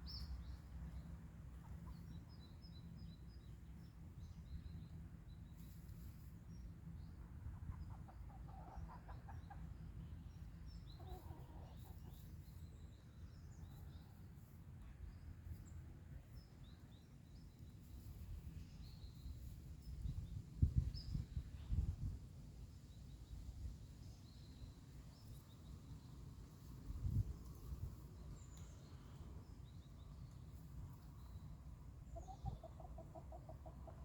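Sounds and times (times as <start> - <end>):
faint chicken call: 11.0 - 12.2
small birds chirping: 22.8 - 34.0.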